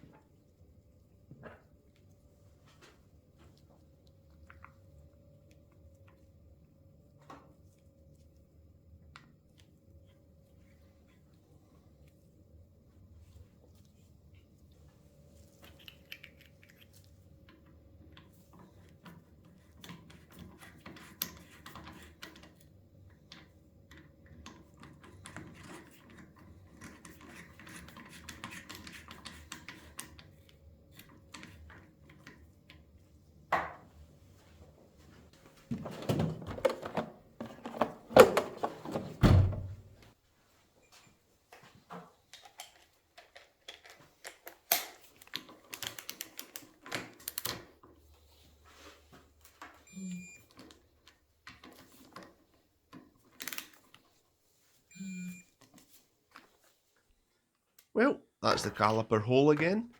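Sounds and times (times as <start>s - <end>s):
small parts clicking and knocking: 15.5s - 17.7s, 42.3s - 47.7s, 52.9s - 54.1s.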